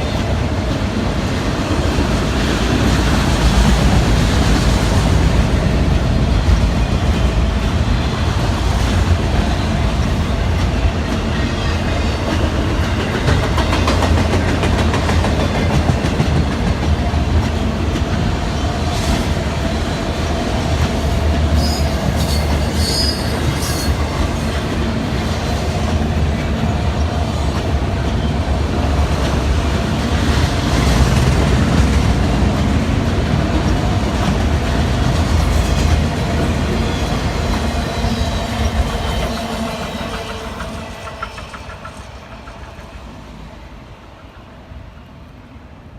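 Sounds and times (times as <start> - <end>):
clickety-clack over rail joints: 0.0 - 43.6
freight train wheels rumbling: 0.0 - 45.9.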